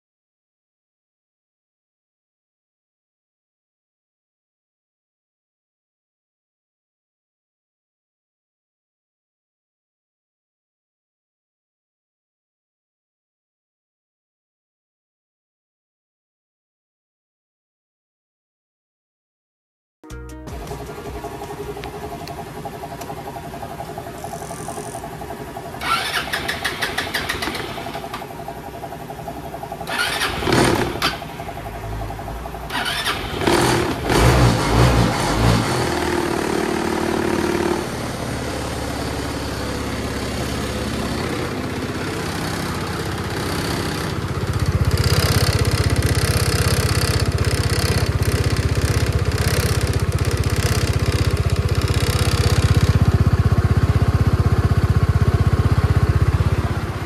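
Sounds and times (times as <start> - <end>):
scooter engine starting and running: 20.5 - 57.0.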